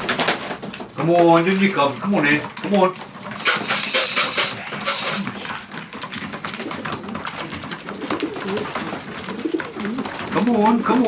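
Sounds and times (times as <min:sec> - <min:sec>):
rustling and clattering: 0:00.0 - 0:11.0
pigeons cooing: 0:02.2 - 0:11.0.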